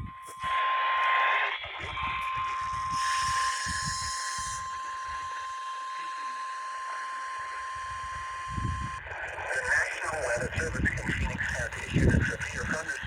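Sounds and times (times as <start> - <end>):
radio static hiss and crackle: 0.0 - 4.2, 4.8 - 13.0
steady alarm tone: 0.0 - 9.1.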